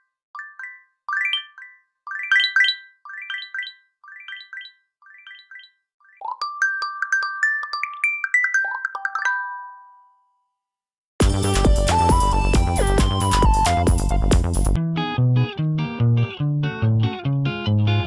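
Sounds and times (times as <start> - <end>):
ringtone with steady beat: 11.2 - 14.8.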